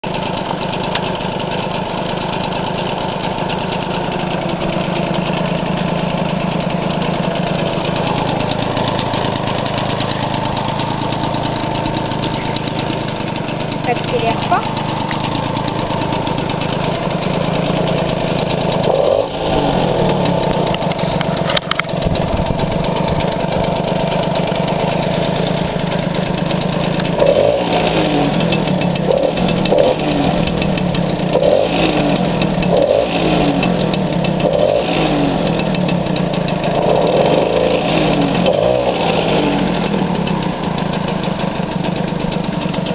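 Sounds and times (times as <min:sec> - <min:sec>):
moped engine running: 0:00.0 - 0:42.9
moped throttle blips: 0:00.0 - 0:42.9.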